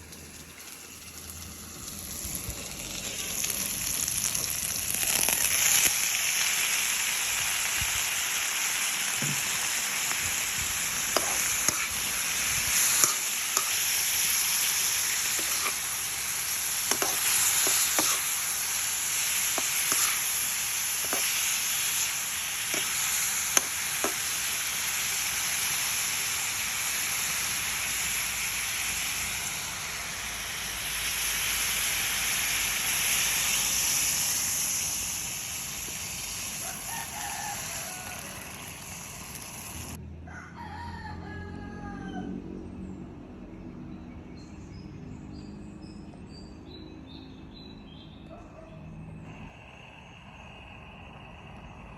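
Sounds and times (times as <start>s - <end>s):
pork sizzling in a hot pan: 0.0s - 40.0s.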